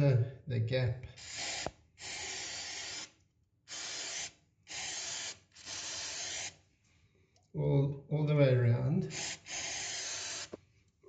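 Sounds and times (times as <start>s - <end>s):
aerosol can spraying: 1.2s - 3.1s, 3.7s - 6.6s, 9.1s - 10.6s.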